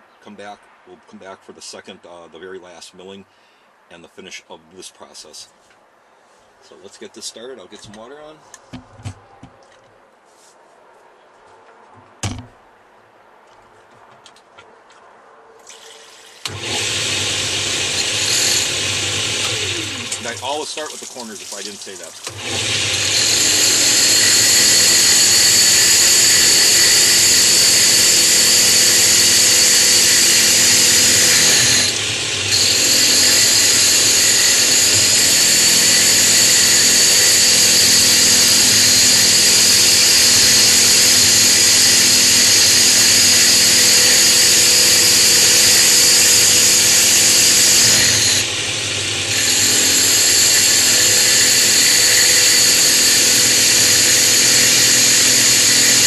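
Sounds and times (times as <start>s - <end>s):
drill press grinding stone: 16.4s - 56.0s.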